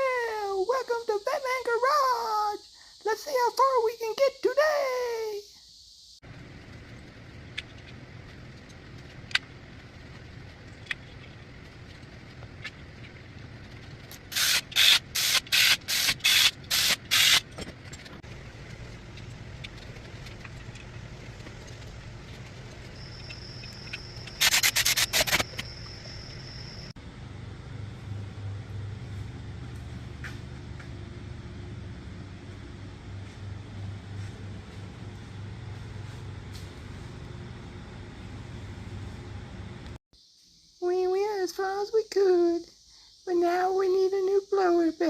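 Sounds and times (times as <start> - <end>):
low hum: 6.2 - 40.0
scattered clicks: 6.9 - 18.2, 19.1 - 25.9.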